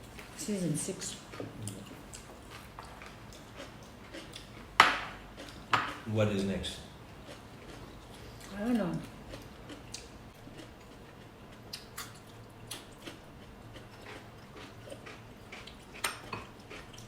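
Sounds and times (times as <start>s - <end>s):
chewing and mouth smacks: 1.2s - 4.7s, 7.3s - 17.0s.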